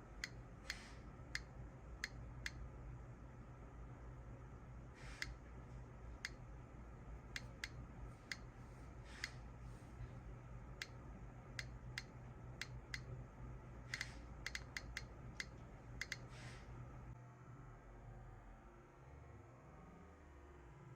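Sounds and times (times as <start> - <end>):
low steady hum: 0.0 - 20.9
radiation detector clicking: 7.3 - 8.5, 11.6 - 13.1, 13.9 - 16.3.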